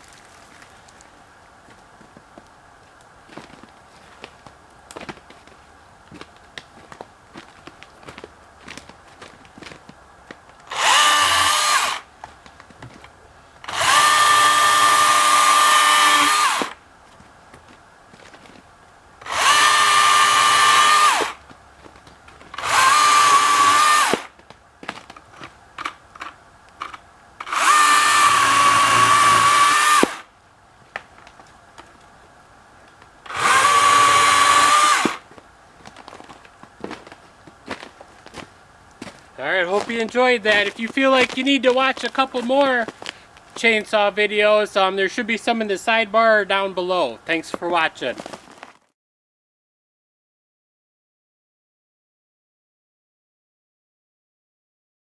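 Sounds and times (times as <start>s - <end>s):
electric chainsaw whine: 10.7s - 12.1s, 13.6s - 16.8s, 19.2s - 21.4s, 22.5s - 24.3s, 27.4s - 30.3s, 33.3s - 35.2s.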